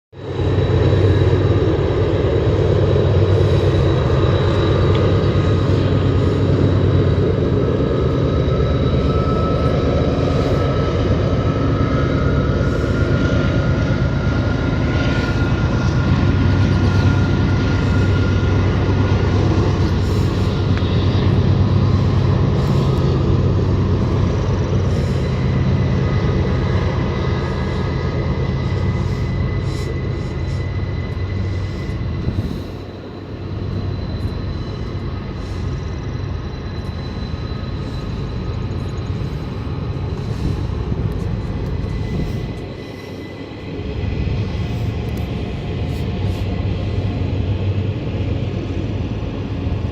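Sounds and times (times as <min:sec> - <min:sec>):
diesel train engine drone: 0:00.0 - 0:49.9
faint high steady tones: 0:00.3 - 0:49.8.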